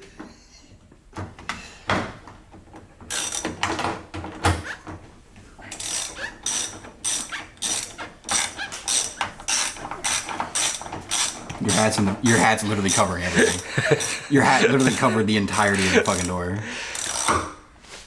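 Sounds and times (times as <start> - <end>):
ratchet wrench clicking: 3.1 - 3.7, 5.7 - 17.5.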